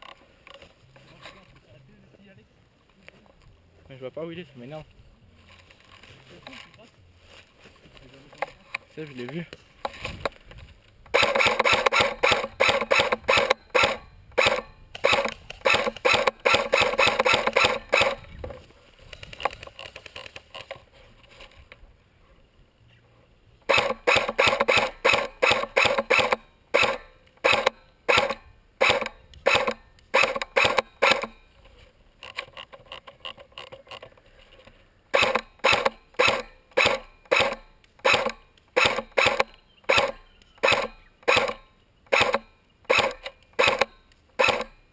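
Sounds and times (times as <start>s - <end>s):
crunching footsteps: 0.0s - 1.8s, 2.8s - 22.0s, 23.6s - 44.9s.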